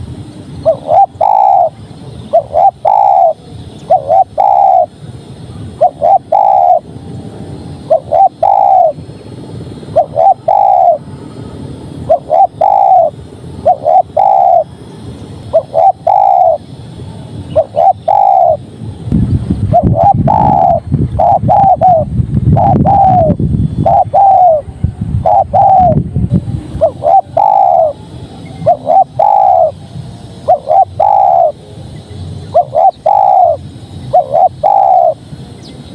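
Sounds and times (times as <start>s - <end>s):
low rumbling noise: 0.0s - 35.9s
dove cooing: 0.6s - 5.0s, 5.8s - 6.9s, 7.9s - 9.0s, 9.9s - 11.1s, 12.0s - 14.7s, 15.5s - 16.6s, 17.5s - 18.6s, 19.7s - 26.0s, 26.8s - 29.8s, 30.4s - 31.6s, 32.5s - 35.2s.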